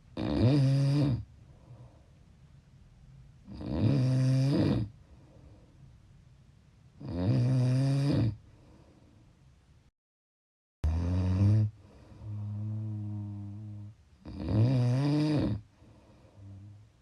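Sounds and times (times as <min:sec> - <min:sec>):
person snoring: 0:00.2 - 0:01.3, 0:03.5 - 0:04.9, 0:07.0 - 0:08.4, 0:10.8 - 0:15.6.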